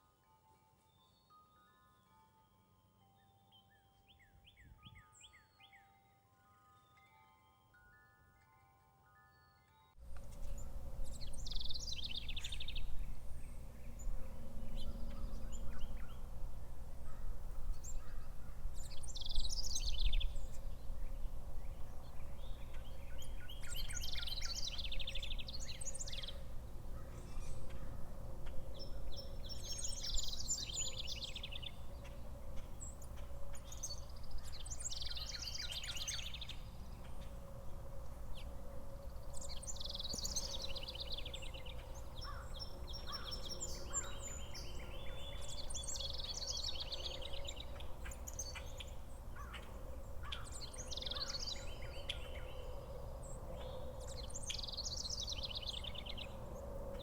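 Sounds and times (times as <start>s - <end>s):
steady low hum: 10.0s - 57.0s
songbird trilling: 17.1s - 28.0s, 28.8s - 37.3s, 39.1s - 52.8s.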